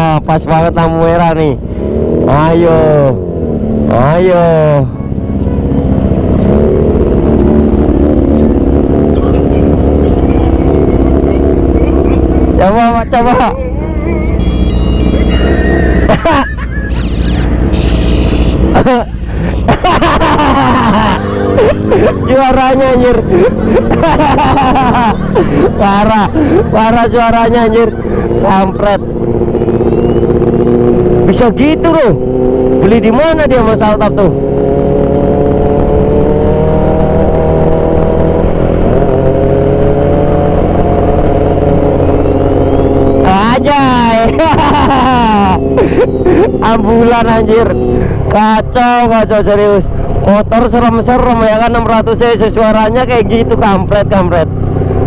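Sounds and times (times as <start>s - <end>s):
motorcycle engine hum: 0.0s - 55.0s
warbling siren-like horn: 14.3s - 16.1s, 16.9s - 18.8s.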